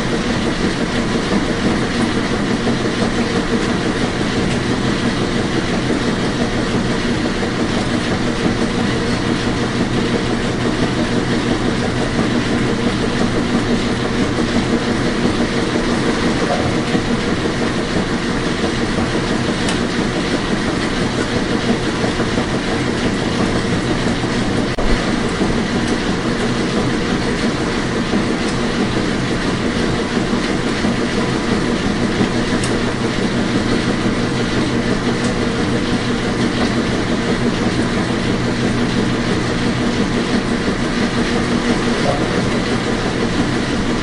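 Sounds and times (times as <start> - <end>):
washing machine whirring: 0.0 - 44.0.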